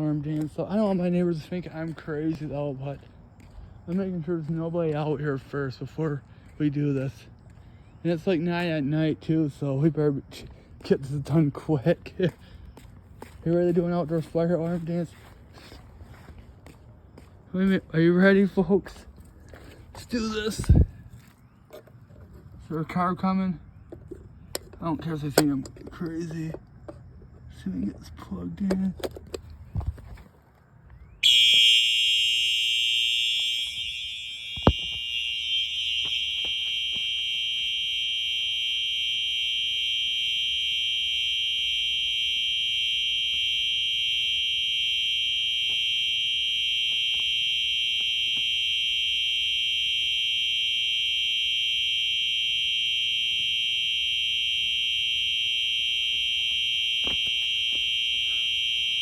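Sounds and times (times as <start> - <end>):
fire alarm high-pitched tone: 17.2 - 21.9, 30.9 - 59.0.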